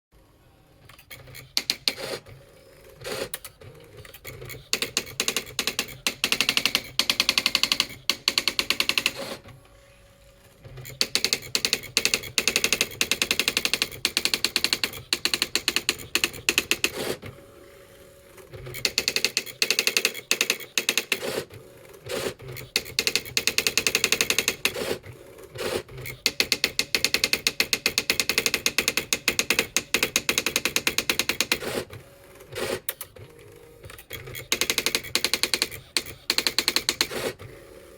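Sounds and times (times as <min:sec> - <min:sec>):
typewriter key strikes: 0:04.7 - 0:09.2, 0:10.9 - 0:17.0, 0:18.8 - 0:21.2, 0:22.7 - 0:24.8, 0:26.3 - 0:31.6, 0:34.3 - 0:37.1.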